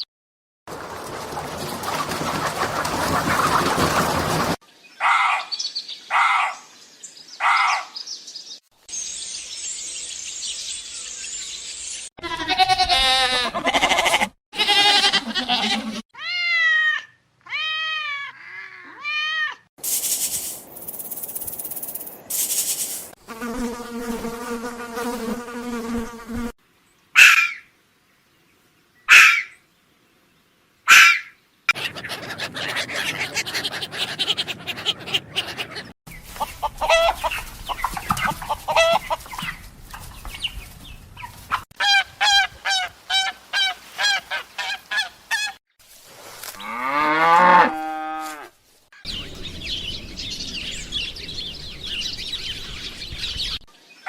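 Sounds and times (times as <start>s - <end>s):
animal calls: 29.1s - 29.6s, 30.9s - 39.6s.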